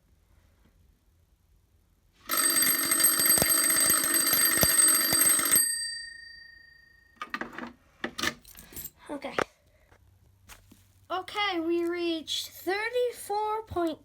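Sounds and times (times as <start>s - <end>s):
fire alarm bell ringing: 2.3s - 7.2s.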